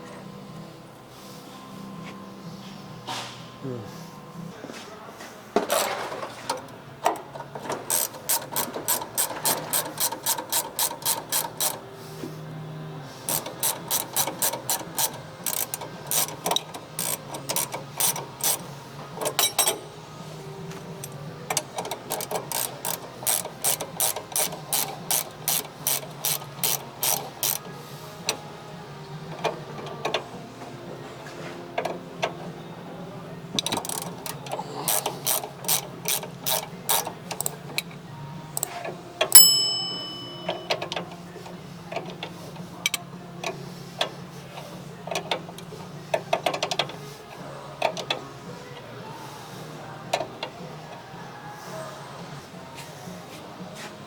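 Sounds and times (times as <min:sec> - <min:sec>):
ratchet wrench clicking: 0:07.6 - 0:11.8, 0:13.3 - 0:19.8, 0:21.0 - 0:27.7, 0:33.6 - 0:38.0.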